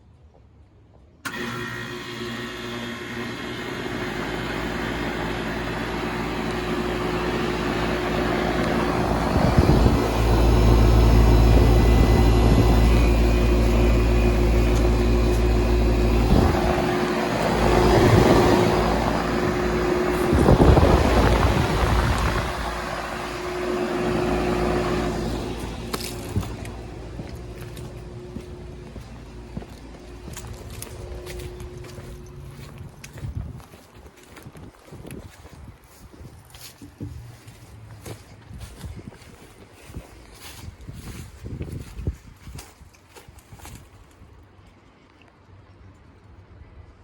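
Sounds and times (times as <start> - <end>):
air conditioner humming: 6.3 - 32.6
deep low rush: 7.6 - 33.7.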